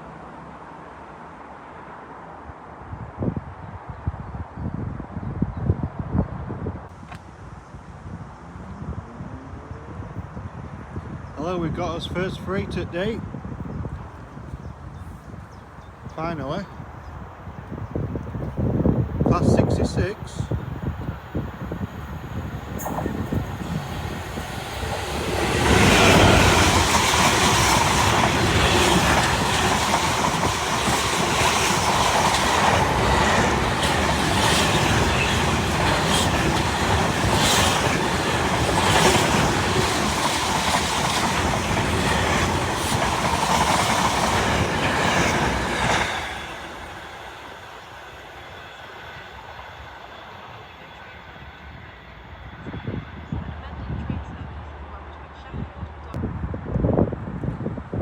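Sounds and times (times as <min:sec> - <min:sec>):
diesel locomotive passing: 0:09.2 - 0:56.6
train wheels clattering: 0:22.8 - 0:50.4.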